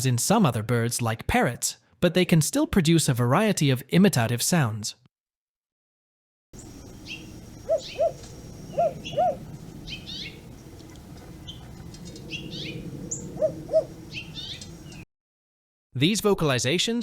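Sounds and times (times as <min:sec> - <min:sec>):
crow hooting: 0:06.6 - 0:15.0
small birds chirping: 0:06.6 - 0:15.0.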